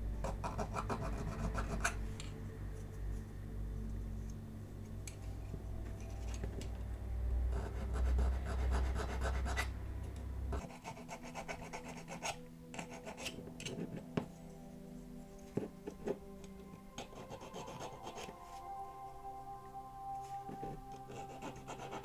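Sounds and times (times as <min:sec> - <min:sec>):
steady low hum: 0:00.0 - 0:22.0
filing metal scraping strokes: 0:10.6 - 0:14.0, 0:17.0 - 0:18.3, 0:21.0 - 0:22.0.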